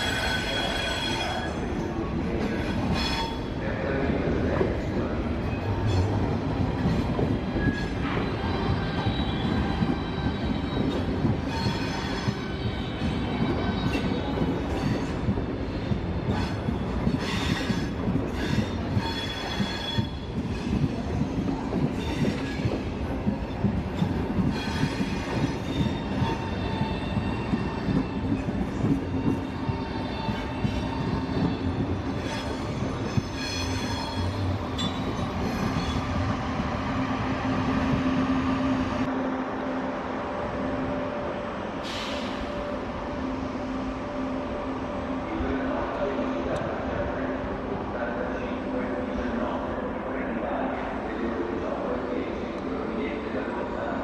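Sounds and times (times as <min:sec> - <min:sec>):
train wheels squealing: 0:00.0 - 0:03.5, 0:05.4 - 0:21.0, 0:22.0 - 0:22.8, 0:23.9 - 0:36.4
train rumbling over tracks: 0:00.0 - 0:54.0.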